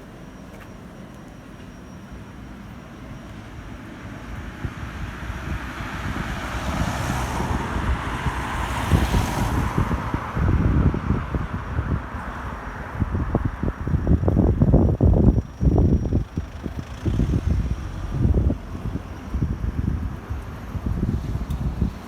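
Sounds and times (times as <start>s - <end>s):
wind buffeting microphone: 4.4s - 22.0s
vehicle passing: 4.7s - 13.4s.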